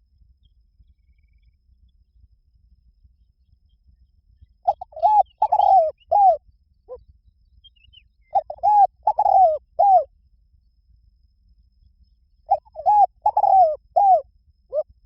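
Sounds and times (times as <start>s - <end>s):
dove cooing: 4.7s - 7.0s, 8.3s - 10.1s, 12.5s - 14.9s.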